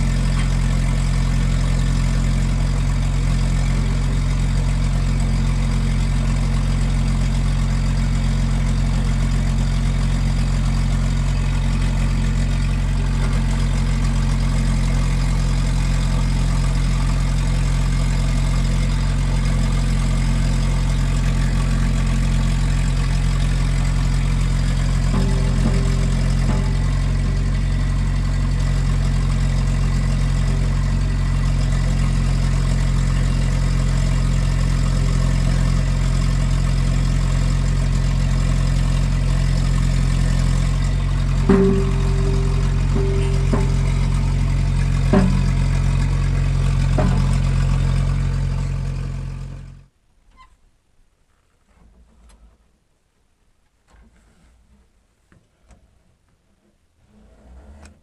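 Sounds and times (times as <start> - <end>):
excavator diesel engine running: 0.0 - 49.9.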